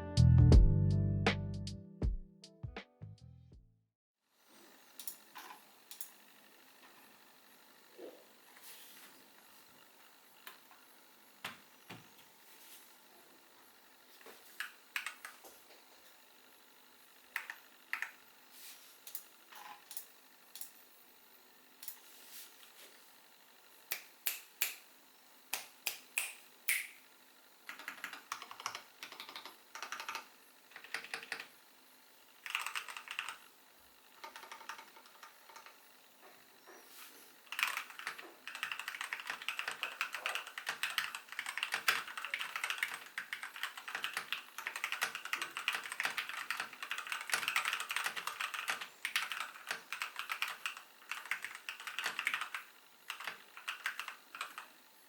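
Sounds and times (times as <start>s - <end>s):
mechanical keyboard typing: 14.6s - 15.4s, 17.3s - 18.2s, 27.6s - 31.6s, 32.4s - 33.4s, 34.2s - 35.8s, 37.5s - 54.7s.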